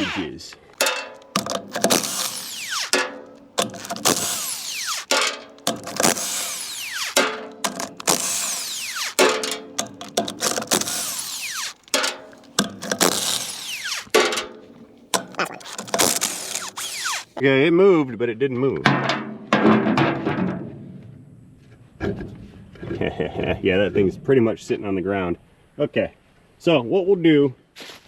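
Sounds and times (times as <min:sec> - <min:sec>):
impact wrench bursts: 0:00.8 - 0:17.4.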